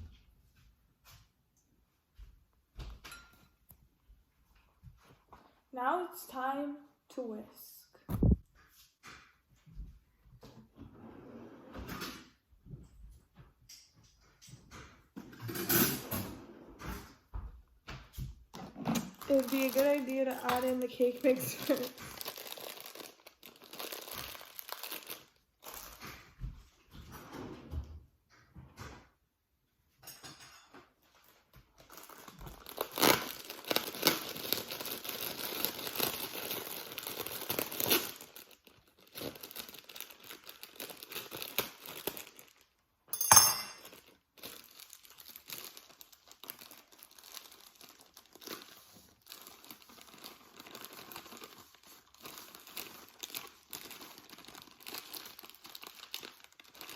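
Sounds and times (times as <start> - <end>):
paper bag crinkling and tearing: 19.0 - 26.2, 31.8 - 42.8, 43.8 - 56.9.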